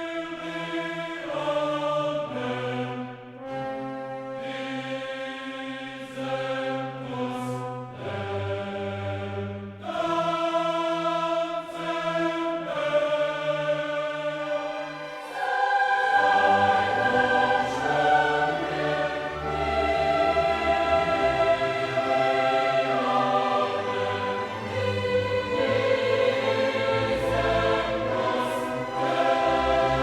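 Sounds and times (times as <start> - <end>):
choir singing: 0.0 - 30.0
orchestra playing held chords: 14.5 - 30.0.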